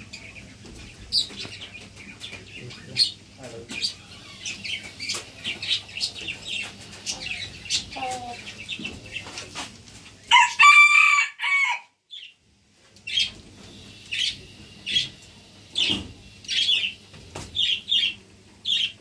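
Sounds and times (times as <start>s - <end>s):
rooster crowing: 10.3s - 12.0s.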